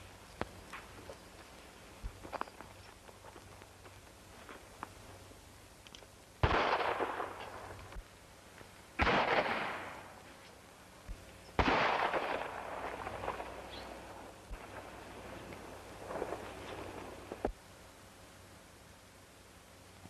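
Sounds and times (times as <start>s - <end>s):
gunshots: 6.4s - 7.5s, 9.0s - 10.1s, 11.6s - 13.6s.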